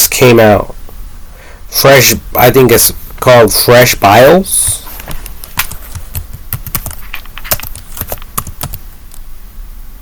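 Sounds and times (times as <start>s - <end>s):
keyboard key clicks: 5.5s - 8.8s.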